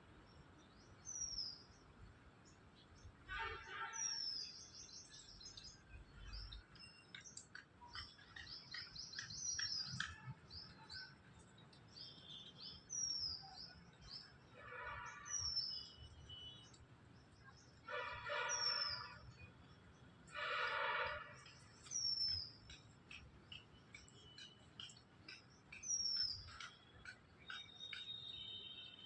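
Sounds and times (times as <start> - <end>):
bird chirps: 0.3 - 29.0
songbirds whistling: 4.0 - 11.2, 11.9 - 14.4, 15.2 - 16.8, 17.5 - 19.4, 21.4 - 29.0.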